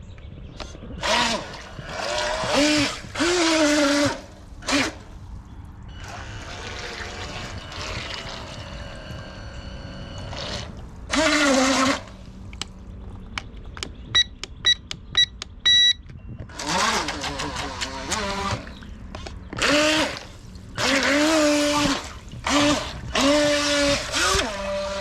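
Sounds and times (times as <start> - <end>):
water swishing and trickling: 0.6 - 13.8, 16.4 - 25.0
short electronic beeps: 5.9 - 6.6, 7.4 - 10.4, 14.1 - 16.5
small electric motor whine: 5.9 - 12.2, 19.6 - 25.0.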